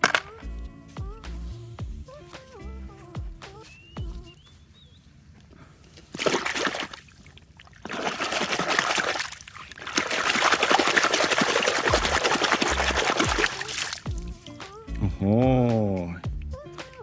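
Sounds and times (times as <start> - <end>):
water spraying and splashing: 5.9 - 14.8.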